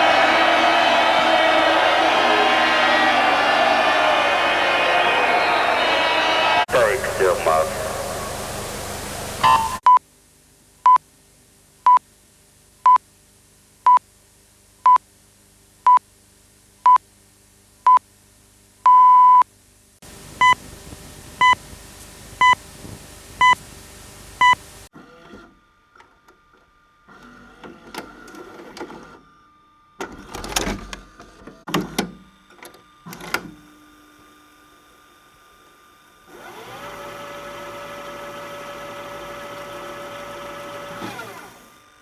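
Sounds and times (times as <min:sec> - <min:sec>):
tape hiss: 0:00.0 - 0:09.8, 0:20.1 - 0:24.9
buzzy beeps: 0:07.7 - 0:09.8
short electronic beeps: 0:09.4 - 0:10.0, 0:18.9 - 0:19.4
faint mechanical whirring: 0:36.3 - 0:42.0.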